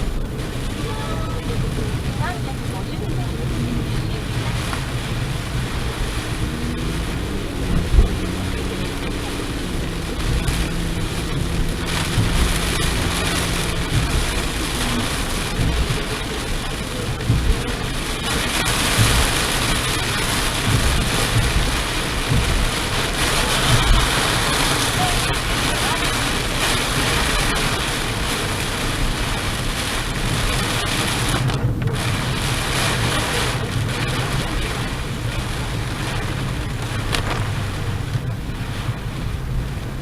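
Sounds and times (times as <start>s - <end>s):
heavy rain hissing: 0.0s - 40.0s
low rumbling: 0.0s - 40.0s.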